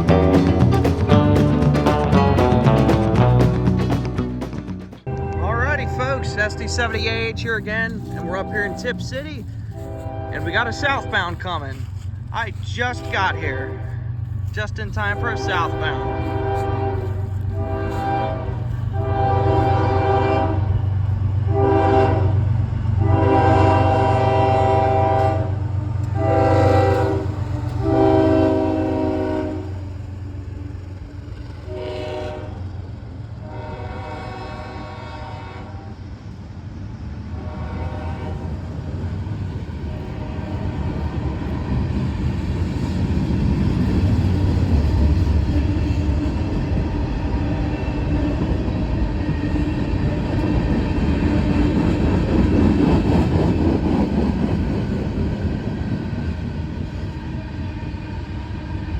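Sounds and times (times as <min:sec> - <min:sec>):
train rumbling: 0:00.0 - 0:58.9
locomotive horn blasts: 0:05.1 - 0:22.4, 0:23.0 - 0:29.9, 0:31.7 - 0:32.7, 0:33.4 - 0:36.0, 0:37.4 - 0:38.5.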